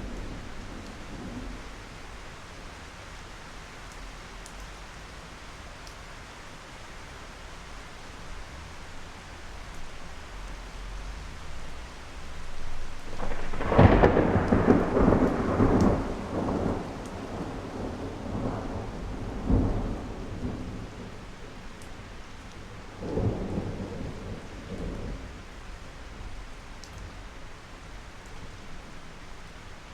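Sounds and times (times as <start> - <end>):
thunder rumbling: 0.0 - 1.9, 10.9 - 25.6
steady rain: 0.0 - 29.9.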